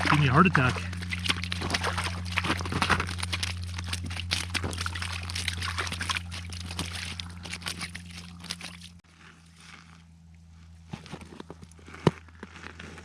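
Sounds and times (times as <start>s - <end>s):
fish thrashing in water: 0.0s - 9.0s
steady low hum: 0.0s - 13.0s.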